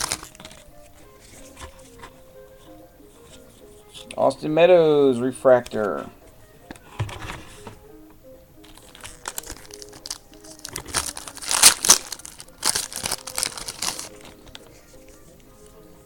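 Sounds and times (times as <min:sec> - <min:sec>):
foil wrapper tearing and crinkling: 0:00.0 - 0:00.7, 0:08.7 - 0:14.4.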